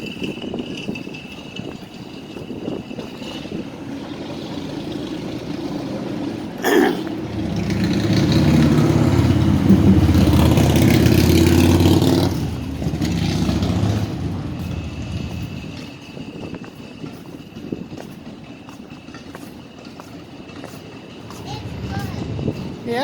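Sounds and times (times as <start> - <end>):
vehicle engine passing by: 7.2 - 15.8, 21.2 - 23.0.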